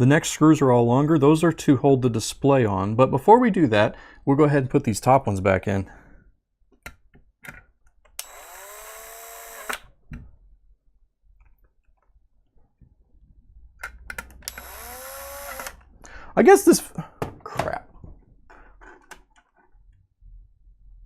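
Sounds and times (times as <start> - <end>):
screw gun motor whine: 8.2 - 9.9, 14.4 - 15.8.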